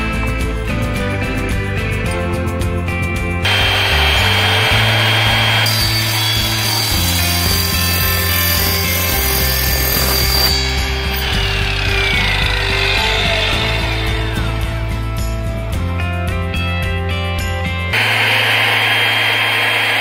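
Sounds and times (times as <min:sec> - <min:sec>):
background music: 0:00.0 - 0:19.9
miter saw cutting: 0:03.4 - 0:15.8, 0:18.0 - 0:20.0
saw blade whine: 0:03.4 - 0:16.0, 0:17.9 - 0:20.0.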